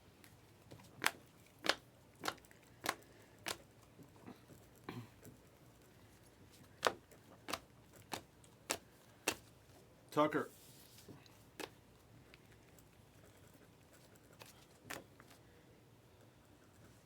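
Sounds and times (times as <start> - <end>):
cards snapping while flipped: 1.0 - 3.6, 6.8 - 9.5.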